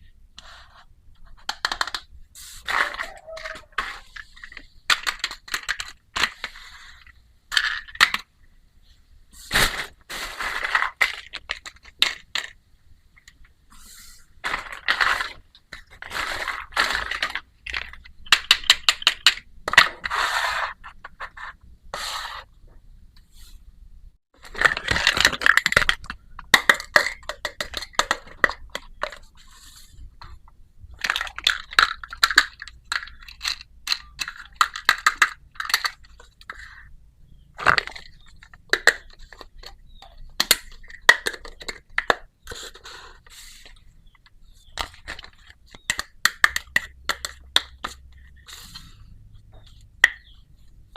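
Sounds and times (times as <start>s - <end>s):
plastic toy pieces clicking: 4.4s - 6.5s, 14.5s - 19.4s, 24.4s - 29.2s, 31.0s - 36.8s, 37.7s - 42.8s, 44.2s - 48.4s.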